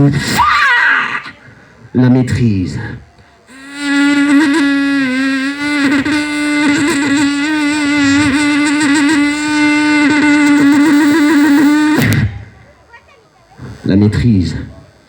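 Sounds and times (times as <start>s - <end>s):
beatbox held vocal tone: 0.0s - 0.5s, 3.5s - 12.4s
beatbox clicks and mouth sounds: 3.5s - 12.4s.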